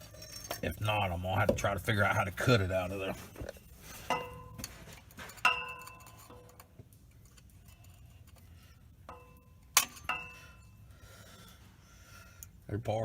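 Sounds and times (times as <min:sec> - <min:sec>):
metallic ringing: 0:03.7 - 0:04.8, 0:05.4 - 0:06.7, 0:09.1 - 0:10.9.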